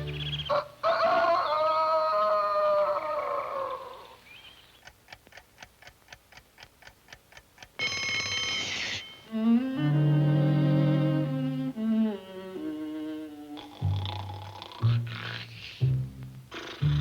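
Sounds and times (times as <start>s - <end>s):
cartoon clock ticking: 4.8s - 9.6s
loud ringing tone: 7.8s - 9.3s.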